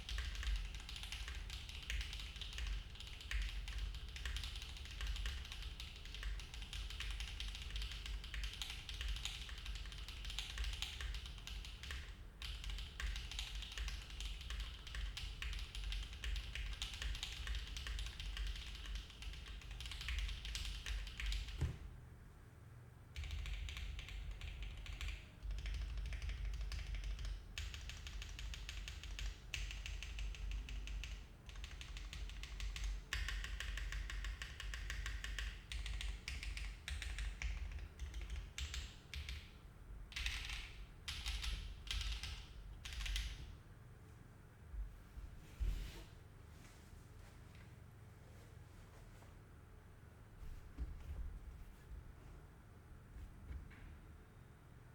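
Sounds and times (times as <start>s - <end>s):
fast mechanical keyboard typing: 0.0s - 21.6s, 23.2s - 39.5s, 40.1s - 43.4s.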